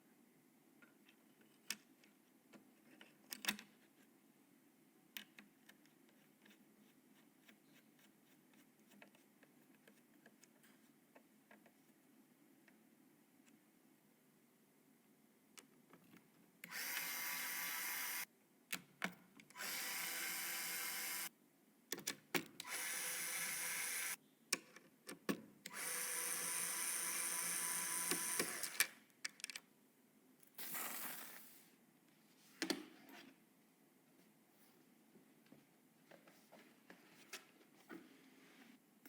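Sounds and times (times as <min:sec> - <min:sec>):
electric screwdriver driving screws: 0:16.7 - 0:18.2, 0:19.6 - 0:21.3, 0:22.6 - 0:24.2, 0:25.7 - 0:28.9
clicks and knocks of parts handled: 0:28.7 - 0:29.7.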